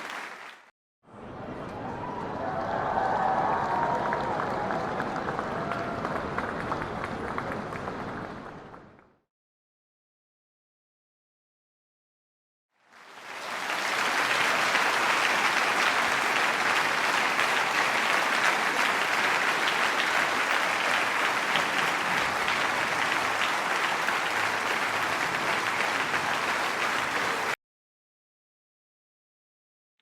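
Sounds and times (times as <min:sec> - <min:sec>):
crowd applauding: 0:00.0 - 0:00.7, 0:01.8 - 0:09.1, 0:12.8 - 0:27.6.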